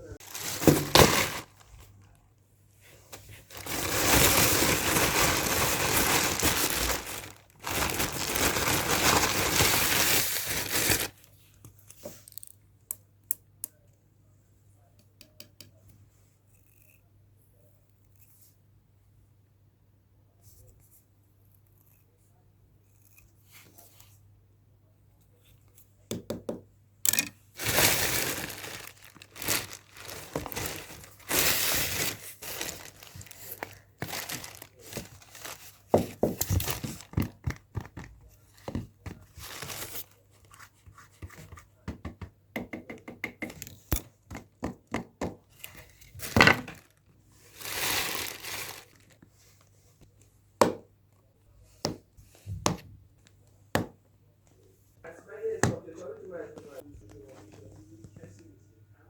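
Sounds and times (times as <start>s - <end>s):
wrapping crinkling and tearing: 0.2s - 2.3s, 3.4s - 11.3s, 27.1s - 37.4s, 39.2s - 40.2s, 45.6s - 49.3s
taps and thunks of items: 51.8s - 52.9s.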